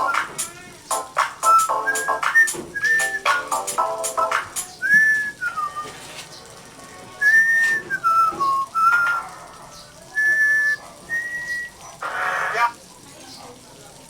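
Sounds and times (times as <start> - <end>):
person whistling a tune: 0.0 - 0.4, 1.4 - 5.9, 7.2 - 9.2, 10.2 - 11.7.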